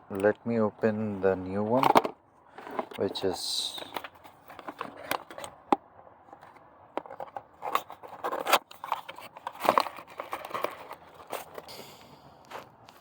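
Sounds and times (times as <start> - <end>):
packaging crinkling and rustling: 1.7 - 5.5, 6.4 - 11.7.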